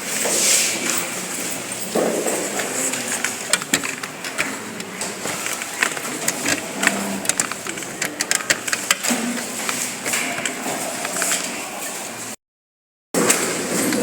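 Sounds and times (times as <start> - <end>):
hands clattering computer parts: 0.9 - 11.6.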